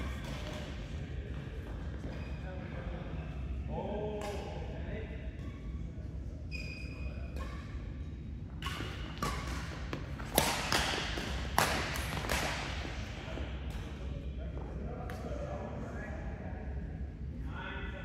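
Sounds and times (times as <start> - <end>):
shoes squeaking on court floor: 1.5 - 2.6, 6.5 - 7.8, 8.6 - 10.3
rackets hitting shuttlecock: 8.5 - 13.0.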